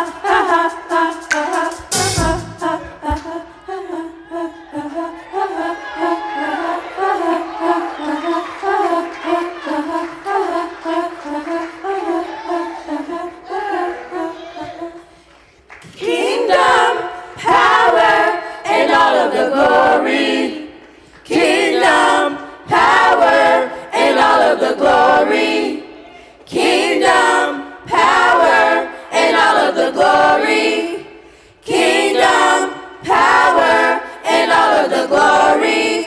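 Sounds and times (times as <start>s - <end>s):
choir singing: 0.0s - 36.0s.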